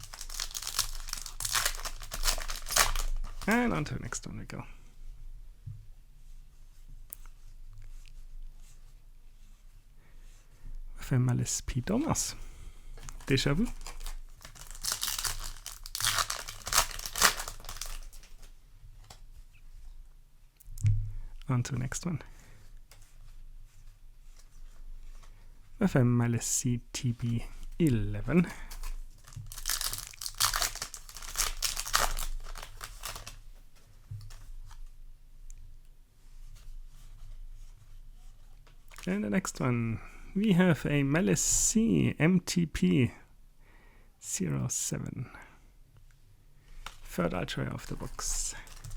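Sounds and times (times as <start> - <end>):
foil wrapper crinkling: 0.0 - 3.9, 13.0 - 18.5, 28.6 - 33.4, 47.7 - 48.9.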